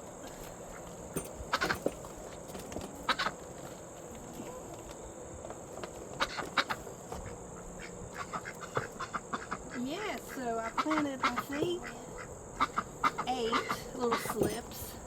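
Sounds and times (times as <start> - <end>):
chickens clucking: 5.8 - 15.0.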